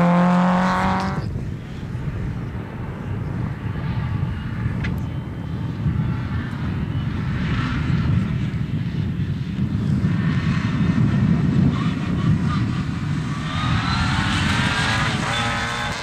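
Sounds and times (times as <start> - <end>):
rally car engine at high revs: 0.0 - 1.3, 10.5 - 16.0.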